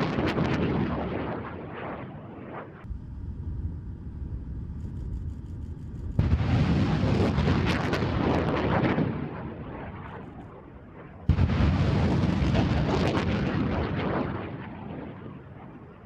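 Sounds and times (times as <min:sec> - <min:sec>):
rocket launch blast and rush: 0:06.2 - 0:10.1, 0:11.3 - 0:15.0.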